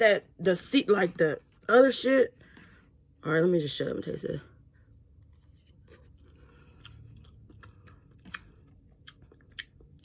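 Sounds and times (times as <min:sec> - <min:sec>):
person chewing noodles: 0:05.2 - 0:10.0.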